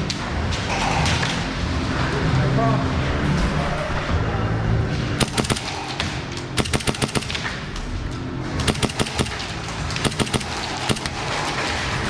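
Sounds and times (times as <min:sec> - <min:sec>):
airsoft guns firing bursts: 0:05.2 - 0:07.8, 0:08.6 - 0:11.8.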